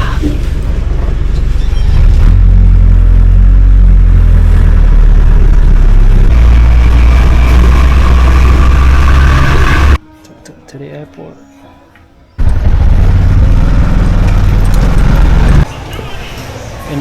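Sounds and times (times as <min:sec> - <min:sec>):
vehicle engine running loudly: 0:00.4 - 0:10.0, 0:12.4 - 0:15.7.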